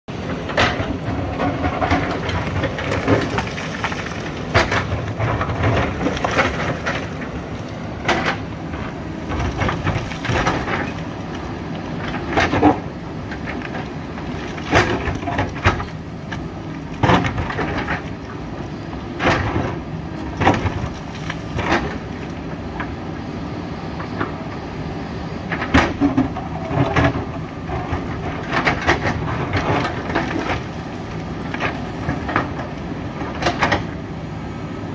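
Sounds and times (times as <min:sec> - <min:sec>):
diesel engine running under load: 0:00.1 - 0:34.9
bucket cracking rock: 0:01.4 - 0:07.2, 0:14.2 - 0:16.0.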